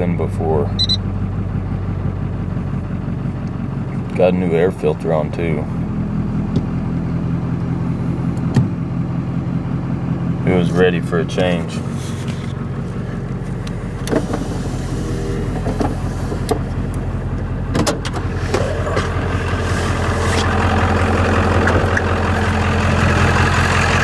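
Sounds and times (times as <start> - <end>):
diesel engine idling: 0.0 - 24.0
sharp clicks and knocks: 17.7 - 22.7.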